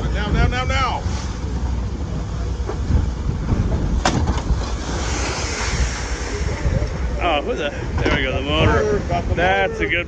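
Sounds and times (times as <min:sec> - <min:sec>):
rough sea: 0:00.0 - 0:10.0
wind buffeting microphone: 0:02.2 - 0:10.0.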